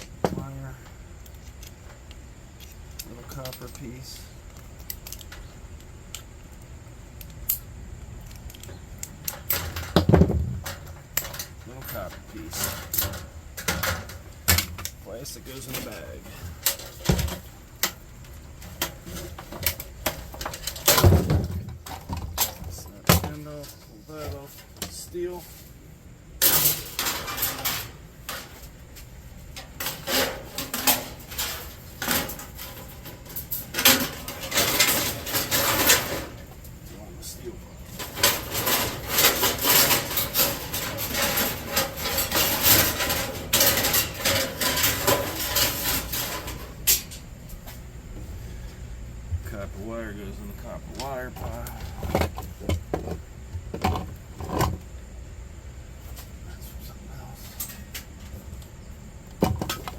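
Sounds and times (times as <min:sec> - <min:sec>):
light clicks of scrap pieces: 0:00.8 - 0:09.9
scrap metal clanking and scraping: 0:02.6 - 0:05.5, 0:08.3 - 0:55.2, 0:56.0 - 0:58.6, 0:59.4 - 0:59.9
clattering and rustling: 0:08.2 - 0:55.1, 0:57.3 - 0:59.9.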